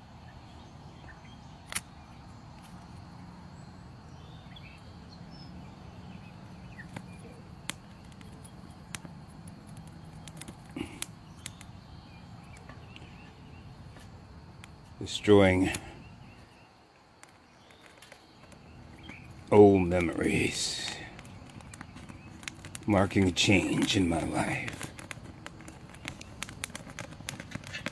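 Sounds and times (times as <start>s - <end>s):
faint outdoor ambience: 0.0s - 27.9s
sharp clicks: 6.9s - 11.7s, 17.2s - 27.9s.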